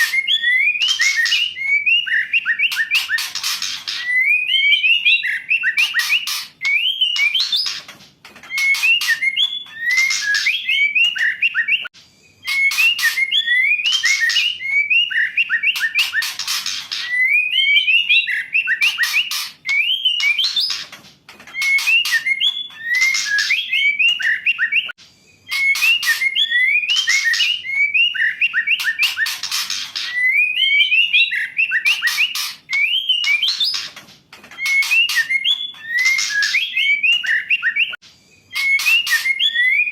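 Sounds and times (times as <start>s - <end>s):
bird whistled notes: 0.0s - 7.8s, 8.5s - 20.8s, 21.6s - 33.9s, 34.6s - 39.9s
bird harsh raspy calls: 0.0s - 39.9s.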